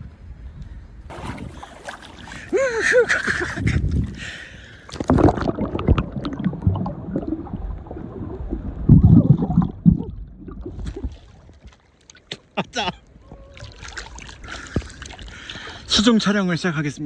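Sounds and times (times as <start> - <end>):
muffled water sloshing: 1.1 - 12.1.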